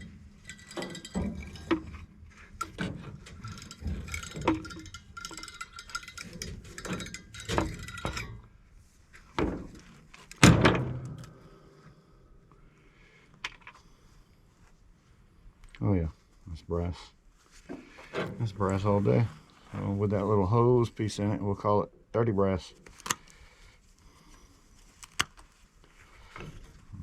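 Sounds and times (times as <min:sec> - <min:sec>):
metal parts and tools clinking: 0:00.0 - 0:08.6.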